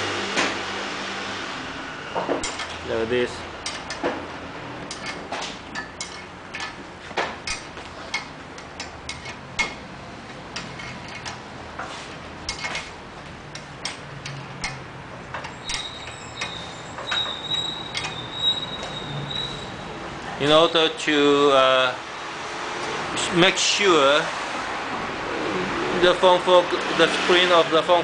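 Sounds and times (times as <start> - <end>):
wrench clicking and tapping metal: 3.6 - 4.0, 4.8 - 5.2, 5.8 - 6.8, 7.4 - 9.8, 12.5 - 12.8, 13.5 - 18.2.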